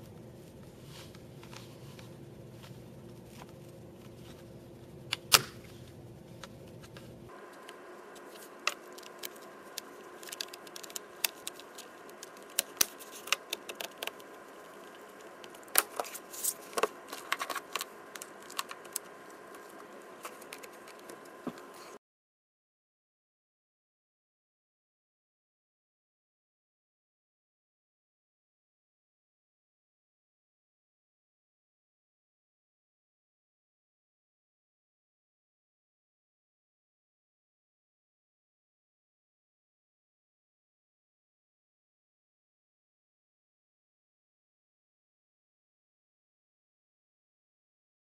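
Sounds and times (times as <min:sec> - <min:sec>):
steady low hum: 0:00.0 - 0:22.0
sharp clicks and crinkling: 0:00.1 - 0:22.0.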